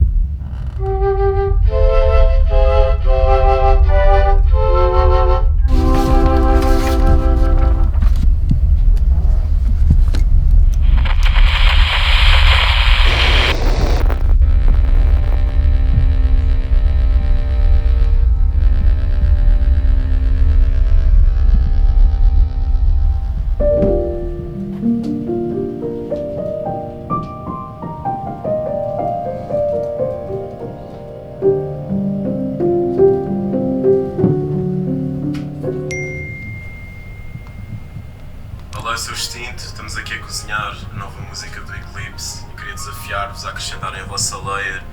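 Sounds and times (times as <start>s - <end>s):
deep piano bass notes: 0.0s - 11.5s, 13.3s - 38.8s
deep rumble: 0.0s - 24.6s
piano rising notes: 0.8s - 8.4s, 13.8s - 44.9s
clicks: 10.1s - 14.3s
loud hissing rush: 10.4s - 14.3s.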